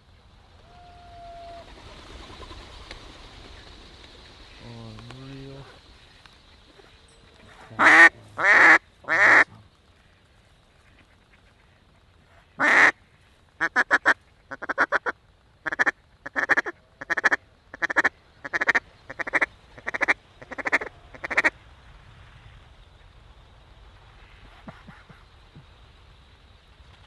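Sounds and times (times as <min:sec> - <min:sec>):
mallard quacking: 0:13.6 - 0:21.5.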